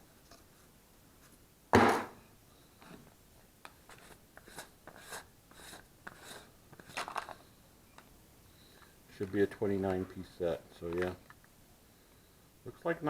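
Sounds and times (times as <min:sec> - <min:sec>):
light clicks and rustles: 0:08.8 - 0:11.6.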